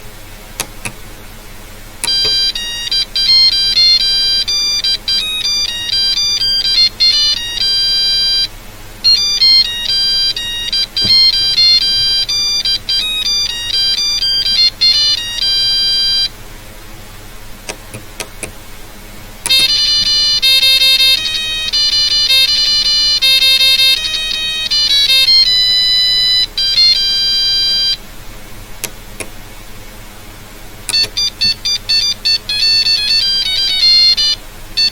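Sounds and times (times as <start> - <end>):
clicks: 0.6 - 1.0, 2.0 - 2.6, 11.0 - 11.4, 17.7 - 18.6, 30.9 - 31.6
electronic beep melody: 9.1 - 16.2, 30.9 - 34.9.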